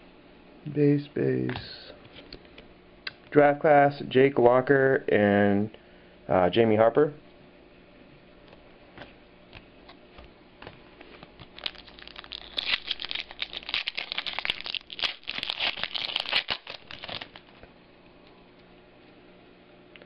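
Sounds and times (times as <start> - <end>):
foil wrapper tearing and crinkling: 11.4 - 17.6.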